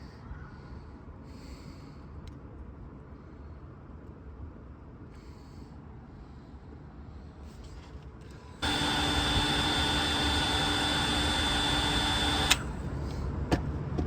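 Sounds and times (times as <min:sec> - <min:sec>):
switch click: 0:08.6 - 0:12.7
heat gun blowing with whine: 0:08.6 - 0:12.9.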